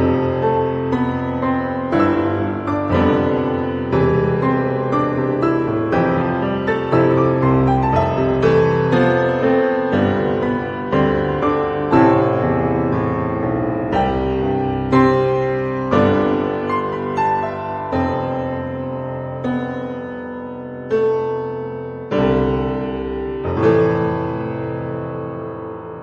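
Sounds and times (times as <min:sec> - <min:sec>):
piano music: 0:00.0 - 0:26.0.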